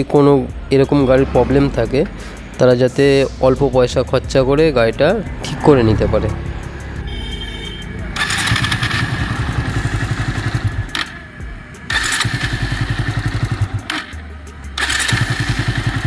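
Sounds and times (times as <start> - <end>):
motorcycle starter cranking: 6.7 - 16.0.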